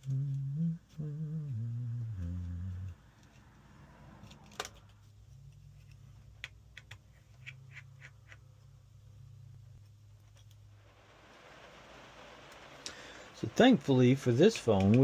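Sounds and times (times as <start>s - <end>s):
faint low steady tone: 0.0s - 3.0s.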